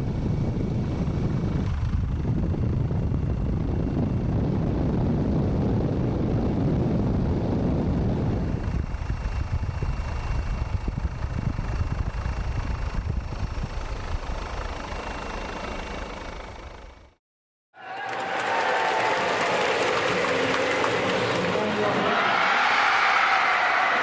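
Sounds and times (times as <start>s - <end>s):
vehicle engine running: 0.0s - 17.2s.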